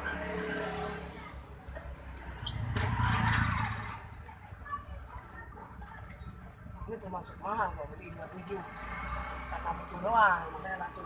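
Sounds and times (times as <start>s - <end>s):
lovebirds chirping: 1.5s - 2.7s, 5.1s - 5.5s.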